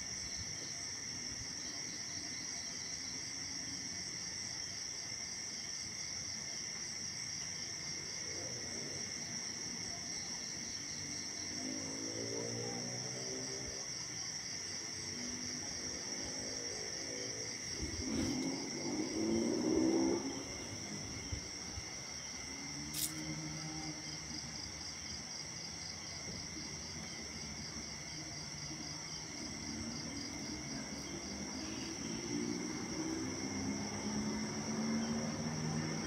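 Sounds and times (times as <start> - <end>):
crickets trilling: 0.0 - 36.0.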